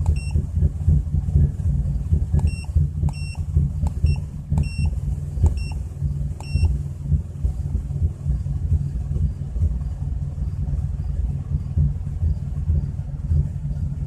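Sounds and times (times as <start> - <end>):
car engine idling roughly: 0.0 - 14.0
short electronic beeps: 0.1 - 0.4, 2.4 - 3.4, 4.0 - 6.8.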